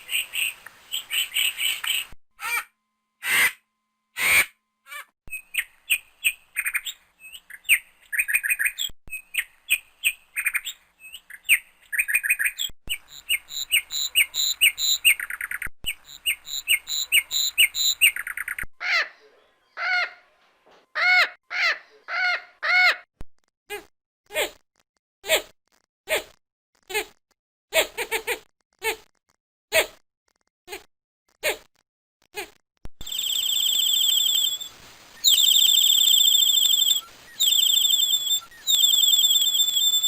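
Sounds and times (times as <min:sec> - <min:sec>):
high bird chirps and tweets: 0:05.3 - 0:18.7, 0:33.0 - 0:40.0
harsh bird squawking calls: 0:33.0 - 0:40.0.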